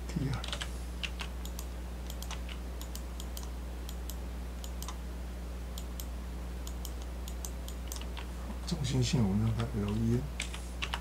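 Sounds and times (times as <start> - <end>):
low electrical hum: 0.0 - 11.0
keyboard clicks: 0.3 - 5.0, 5.8 - 8.3, 9.5 - 11.0
computer mouse clicks: 0.4 - 5.0, 5.8 - 8.3.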